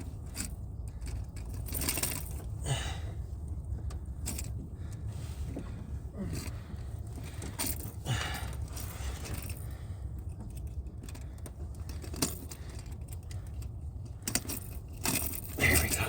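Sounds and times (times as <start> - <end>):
steady low rumble: 0.0 - 16.0
fishing tackle clicking and jingling: 12.0 - 16.0.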